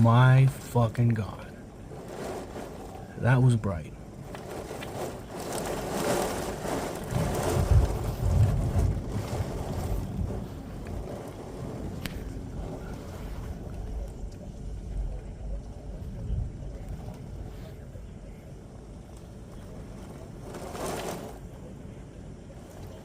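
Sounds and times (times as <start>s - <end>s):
thunder rumbling: 0.0s - 23.0s.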